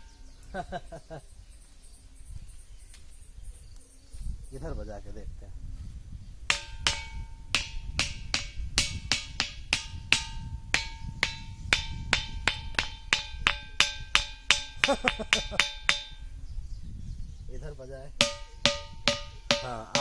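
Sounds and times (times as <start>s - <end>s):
stone striking ringing rock: 6.5s - 16.4s, 18.2s - 20.0s.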